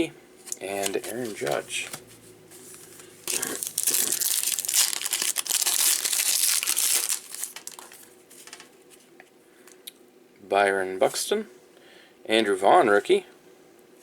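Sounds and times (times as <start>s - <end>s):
foil wrapper crinkling and tearing: 3.3s - 8.7s.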